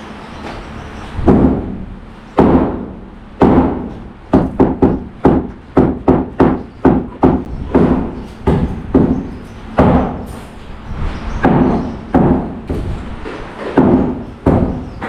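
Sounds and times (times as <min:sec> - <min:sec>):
hammer strikes: 0:02.4 - 0:10.4, 0:11.4 - 0:15.0.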